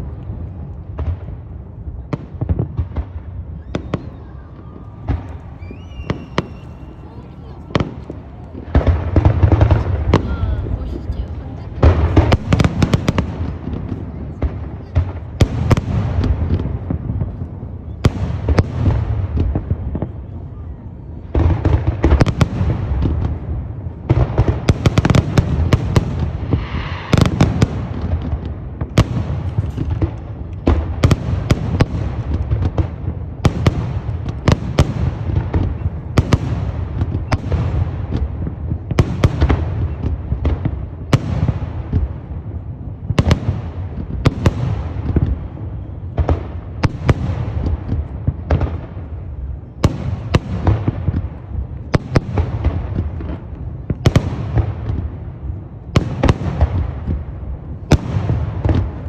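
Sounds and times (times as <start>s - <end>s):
fireworks bursting with bangs: 0.0s - 59.0s.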